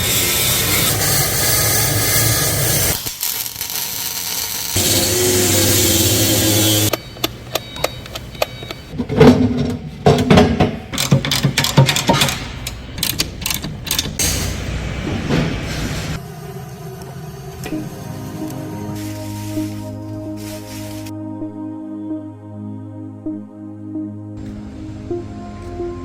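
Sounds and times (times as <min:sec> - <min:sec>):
power tool running: 0:00.0 - 0:06.9
sharp knocks and clanks of steel: 0:06.9 - 0:16.2.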